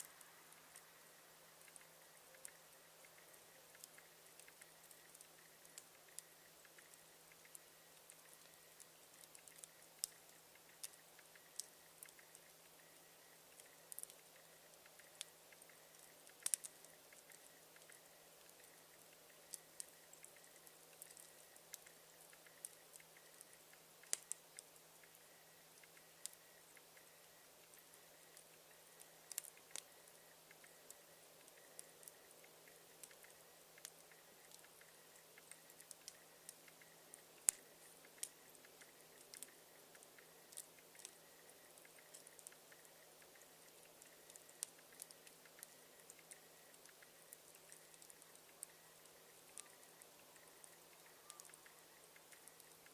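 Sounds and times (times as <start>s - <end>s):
campfire crackling: 0.0s - 52.9s
burning wood popping: 1.6s - 52.9s.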